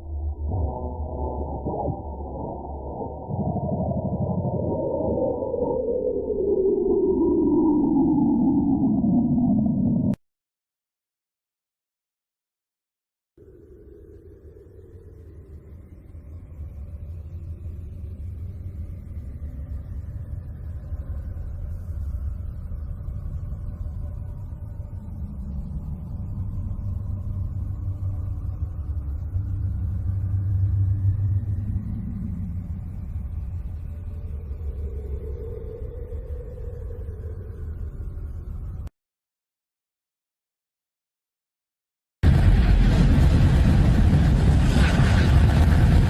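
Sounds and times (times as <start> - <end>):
deep rumbling drone: 0.0 - 10.2, 13.4 - 38.9, 42.2 - 46.0
faint gliding whistling tones: 1.2 - 10.2, 13.4 - 38.9.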